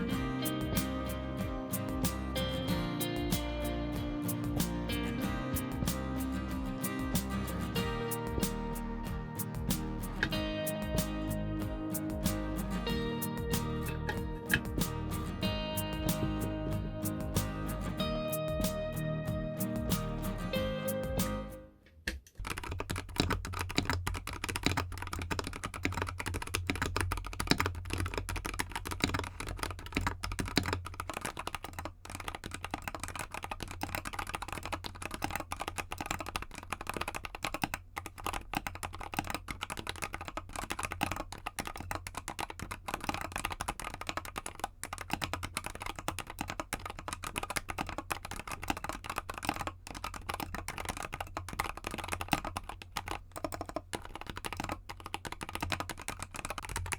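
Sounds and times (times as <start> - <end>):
fast mechanical keyboard typing: 22.4 - 56.9.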